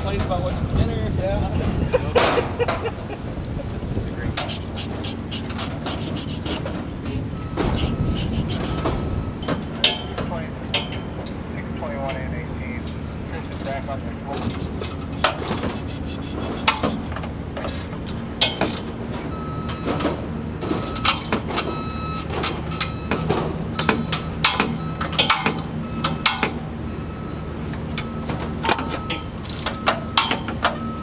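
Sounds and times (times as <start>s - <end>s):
engine running: 0.0s - 31.0s
metallic clanks and knocks: 8.8s - 11.4s, 16.7s - 26.6s, 27.9s - 30.8s.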